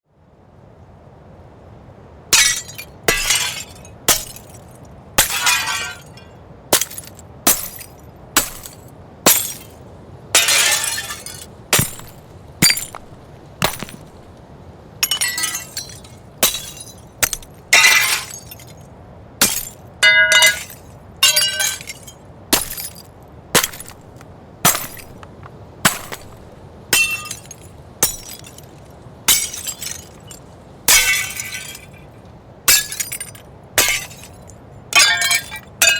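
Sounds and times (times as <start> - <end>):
low background ambience: 0.1 - 35.9
falling glass shards tinkling: 2.4 - 9.8, 10.4 - 14.3, 15.0 - 18.8, 19.4 - 25.2, 25.9 - 32.1, 32.7 - 35.9
glass panes shattering: 2.4 - 9.8, 10.4 - 14.3, 15.0 - 18.8, 19.4 - 25.2, 25.8 - 32.0, 32.7 - 35.9.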